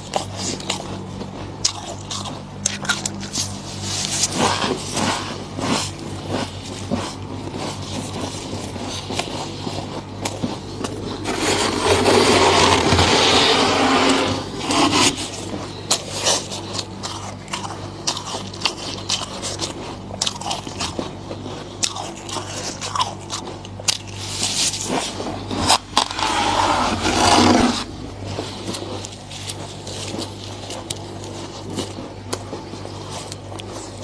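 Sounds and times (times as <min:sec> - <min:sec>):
low hum: 0:00.0 - 0:21.7
freezer frost being scraped: 0:01.7 - 0:34.0.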